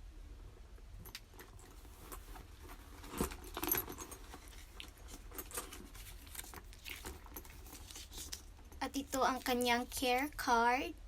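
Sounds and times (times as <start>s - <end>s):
handbag metal hardware clinking: 1.0s - 9.4s.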